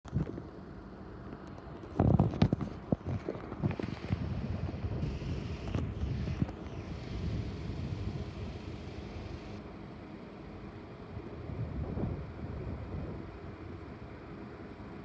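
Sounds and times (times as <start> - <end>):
wind buffeting microphone: 1.9 - 9.6, 11.4 - 13.7.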